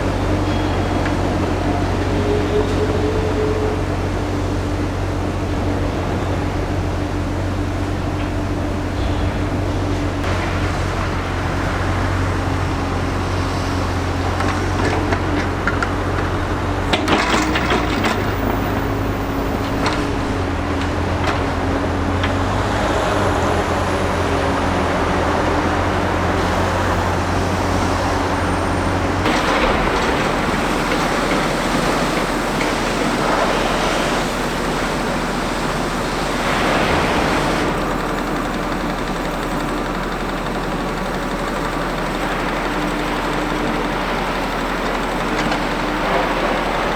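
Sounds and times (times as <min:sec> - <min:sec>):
excavator diesel engine running: 0:00.0 - 0:46.9
knocks and clatter: 0:14.1 - 0:26.4, 0:27.1 - 0:46.9.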